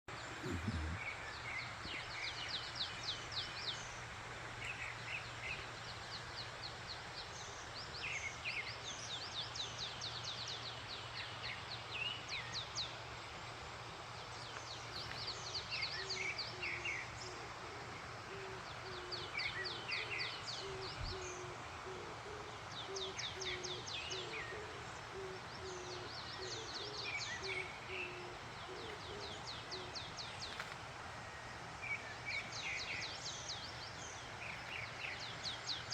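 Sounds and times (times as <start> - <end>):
songbirds trilling: 0.1 - 12.9, 14.3 - 30.8
low hooting call: 0.2 - 1.2.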